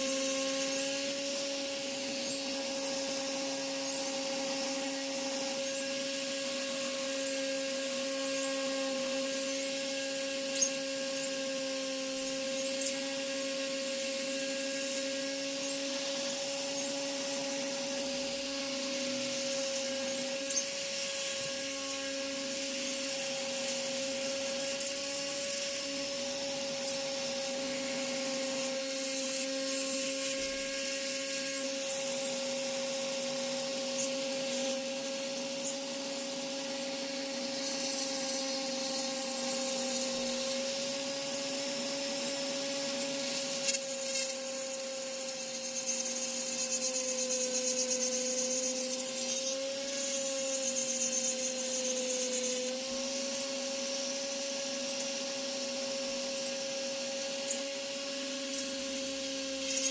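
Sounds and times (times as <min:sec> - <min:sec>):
electric motor humming: 0:00.0 - 0:59.9.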